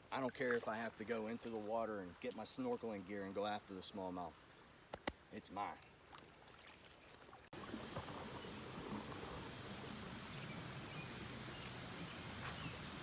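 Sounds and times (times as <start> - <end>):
creek water running: 0.0 - 13.0
short hiss: 11.5 - 13.0.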